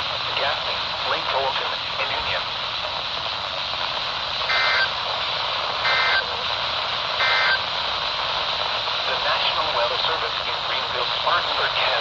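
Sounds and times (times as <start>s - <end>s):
radio static hiss: 0.0s - 12.0s
buzzy digital data tones: 4.5s - 5.0s, 5.8s - 6.5s, 7.2s - 7.7s.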